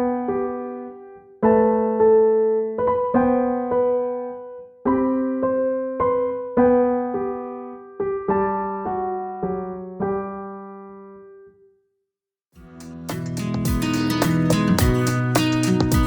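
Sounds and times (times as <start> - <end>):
slow electric piano melody: 0.0 - 11.6.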